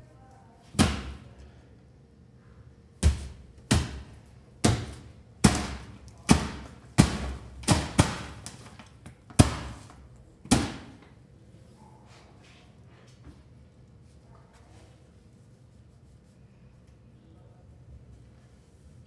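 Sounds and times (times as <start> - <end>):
punch impacts: 0.8 - 1.3, 3.0 - 8.4, 10.5 - 11.0.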